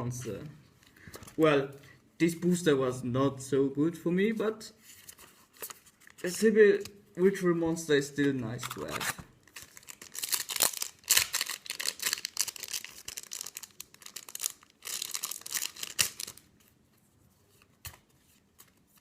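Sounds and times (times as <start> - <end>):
foil wrapper tearing and crinkling: 8.6 - 16.5.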